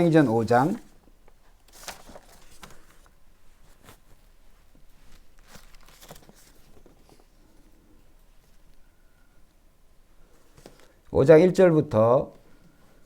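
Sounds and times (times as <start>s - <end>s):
thin pages being turned: 1.6s - 4.3s, 5.0s - 7.3s.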